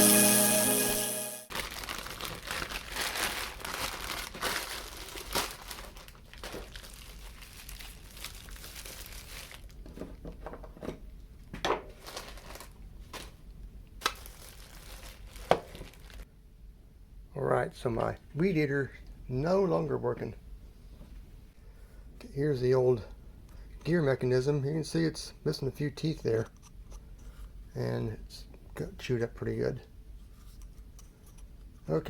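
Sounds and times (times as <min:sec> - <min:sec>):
crinkling handling noise: 0:01.5 - 0:11.0, 0:11.6 - 0:16.3.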